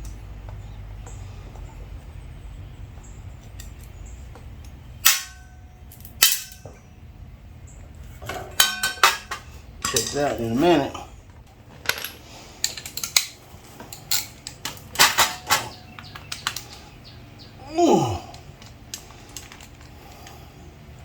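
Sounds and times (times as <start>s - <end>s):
low steady hum: 0.0s - 21.0s
metal tools clinking: 5.1s - 6.8s, 8.1s - 10.9s, 11.8s - 16.7s.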